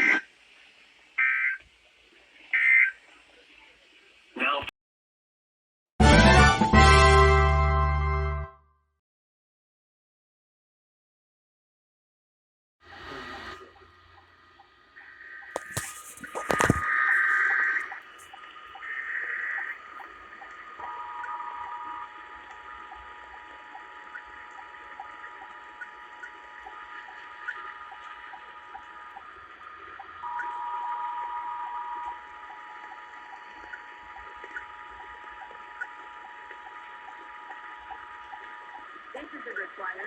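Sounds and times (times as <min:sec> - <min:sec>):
radio static hiss: 0:00.0 - 0:04.7, 0:12.9 - 0:40.0
radio static clicks: 0:13.1 - 0:30.6
two-tone alert signal: 0:30.2 - 0:32.3.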